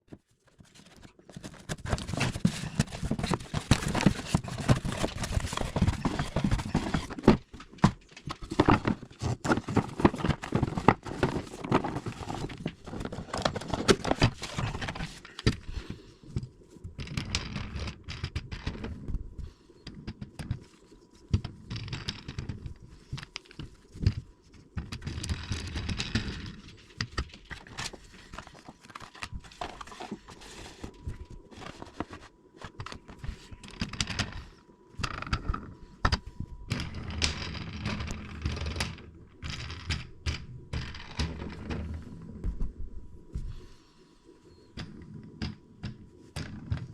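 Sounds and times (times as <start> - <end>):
box knocks and clicks: 1.3 - 15.6.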